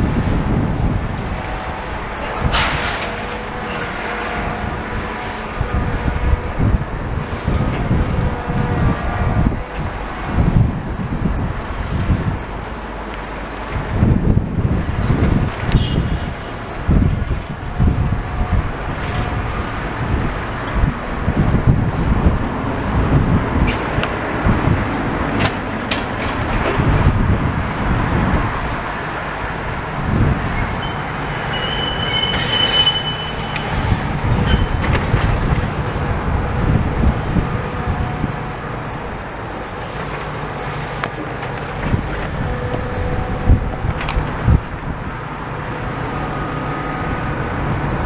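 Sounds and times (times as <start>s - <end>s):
demolition machinery rumble: 0.0s - 48.0s
high metallic squeal: 30.4s - 35.0s
clanks and scraping: 30.5s - 35.8s.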